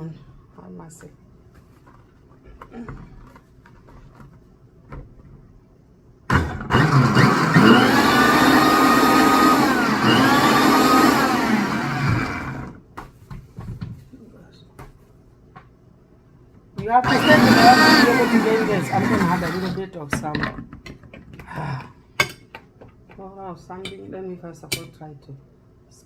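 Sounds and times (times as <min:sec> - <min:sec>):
electric blender motor: 0:06.3 - 0:12.8, 0:17.0 - 0:19.8.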